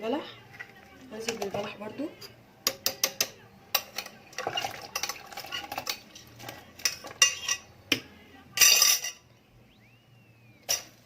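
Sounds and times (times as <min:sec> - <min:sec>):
cutlery clinking against dishes: 0:01.2 - 0:08.0, 0:08.6 - 0:09.3, 0:10.7 - 0:11.0.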